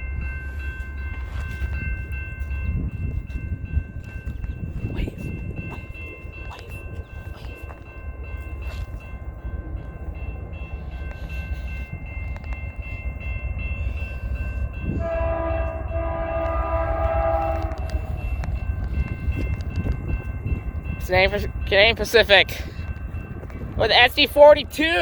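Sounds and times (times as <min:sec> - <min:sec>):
low rumble of train: 0:00.0 - 0:25.0
locomotive air horn blast: 0:14.9 - 0:18.2.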